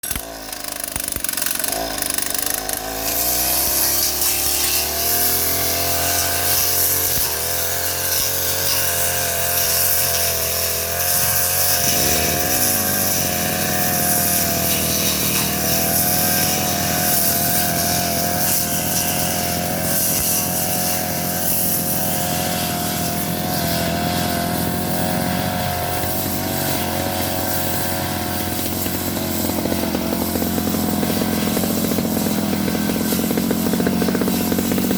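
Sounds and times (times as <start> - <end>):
brush cutter engine revving: 0.0 - 34.9.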